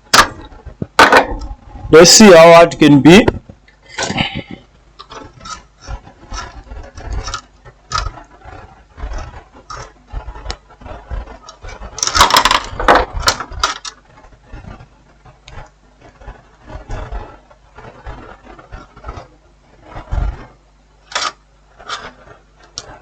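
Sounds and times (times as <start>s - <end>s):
clatter of tools: 4.0s - 14.0s.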